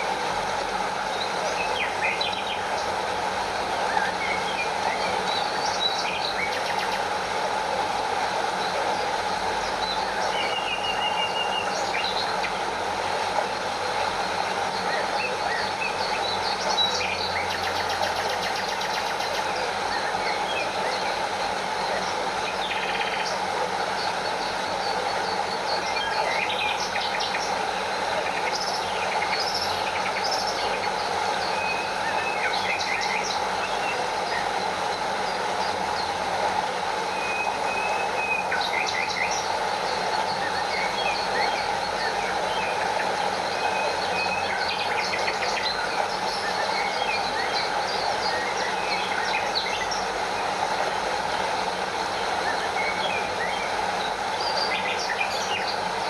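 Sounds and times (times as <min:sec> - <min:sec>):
stream over small waterfall: 0:00.0 - 0:56.0
birds chirping: 0:37.0 - 0:56.0.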